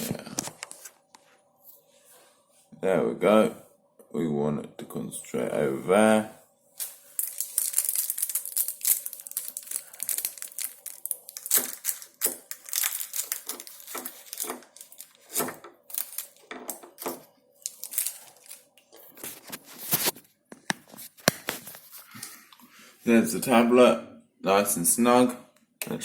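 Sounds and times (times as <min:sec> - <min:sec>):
plastic wrapping crinkling: 0:06.8 - 0:20.2.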